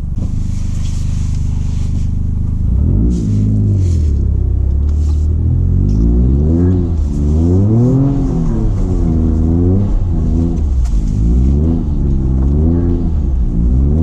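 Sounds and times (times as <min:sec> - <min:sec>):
car engine revving: 0:00.0 - 0:14.0
brief hisses: 0:00.2 - 0:02.3.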